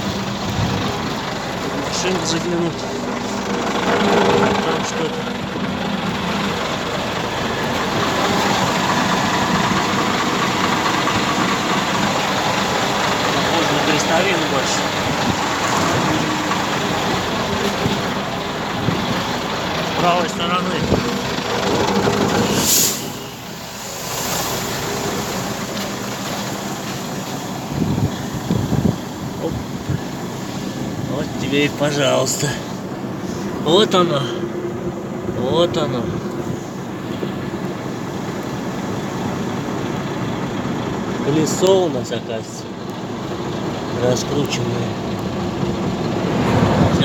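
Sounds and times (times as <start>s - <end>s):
truck engine running: 0.0s - 47.0s
wind on microphone: 27.7s - 30.1s.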